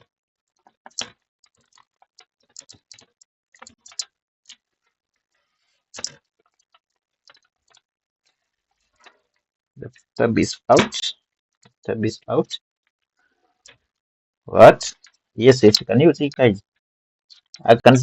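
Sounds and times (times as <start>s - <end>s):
tools clicking on laptop motherboard: 0.9s - 4.6s, 6.0s - 7.8s.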